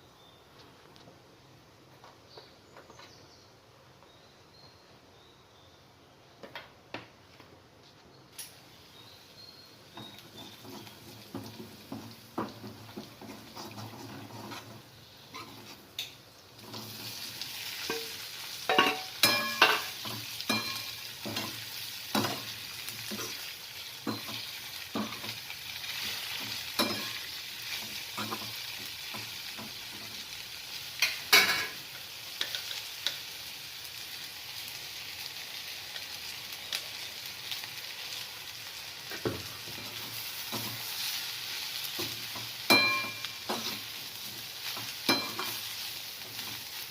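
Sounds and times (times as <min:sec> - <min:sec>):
okra sizzling in a pan: 0:08.3 - 0:46.9
spatula knocking and scraping pan: 0:10.0 - 0:16.1, 0:24.0 - 0:25.4, 0:41.9 - 0:43.9.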